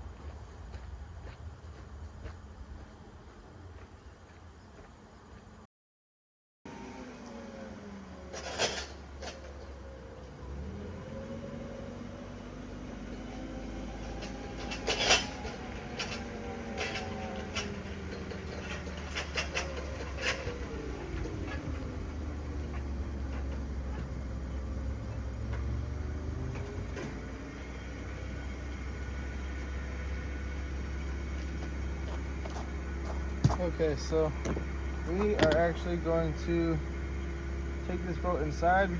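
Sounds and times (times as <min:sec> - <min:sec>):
vehicle engine running: 0:06.7 - 0:38.9
sharp clicks and knocks: 0:32.4 - 0:36.0.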